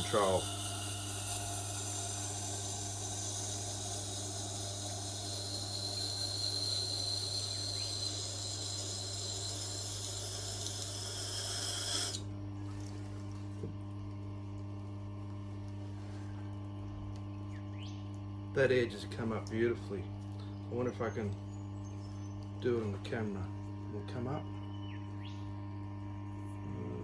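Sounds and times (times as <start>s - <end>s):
knife grinding on sharpener: 0.0s - 12.2s
low motor hum: 0.0s - 27.0s.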